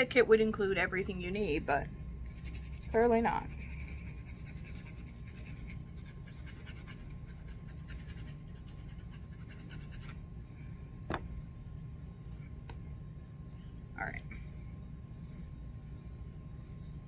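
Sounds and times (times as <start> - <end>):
nail file scraping: 2.2 - 10.2.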